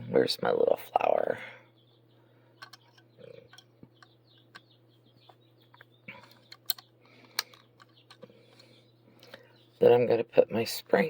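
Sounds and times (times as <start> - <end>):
small metal parts clicking: 6.2 - 8.6.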